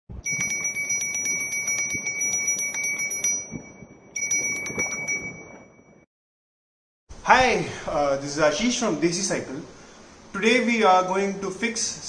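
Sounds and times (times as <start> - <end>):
bicycle bell ringing rapidly: 0.2 - 5.5.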